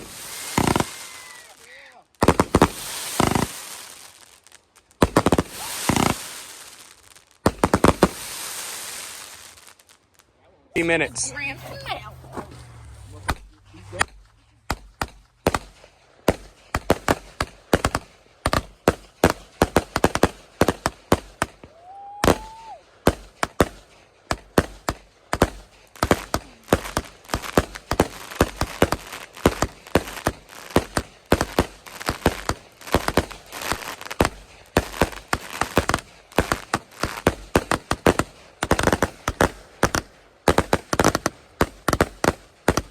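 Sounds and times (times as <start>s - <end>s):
rising firework whistle: 0.0s - 1.6s, 5.4s - 6.6s, 21.6s - 22.9s
fireworks bangs: 0.0s - 42.9s.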